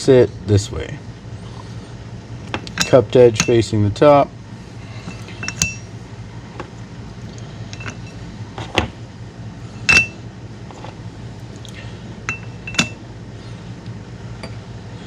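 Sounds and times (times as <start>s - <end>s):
steady low hum: 0.0s - 15.0s
metal parts clinking: 5.1s - 5.9s, 12.3s - 13.0s.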